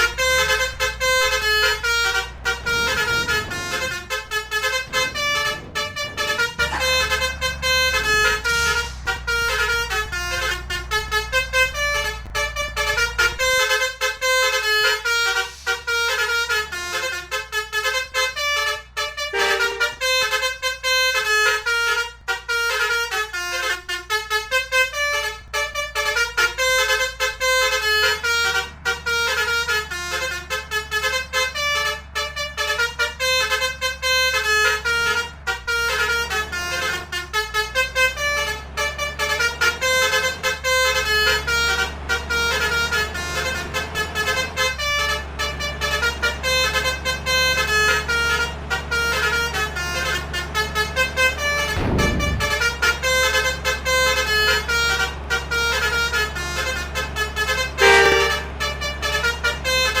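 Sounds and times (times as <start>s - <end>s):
bus musical horns: 0.0s - 60.0s
loud horn blast: 0.0s - 60.0s.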